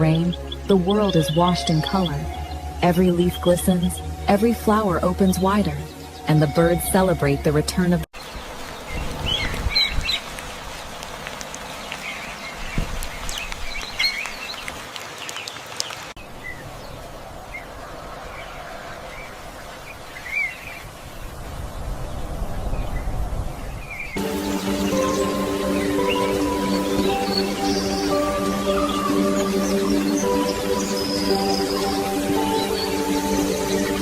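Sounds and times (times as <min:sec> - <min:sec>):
wild birds chirping: 0:00.0 - 0:07.0, 0:08.2 - 0:34.0
music: 0:00.0 - 0:08.1, 0:24.2 - 0:34.0.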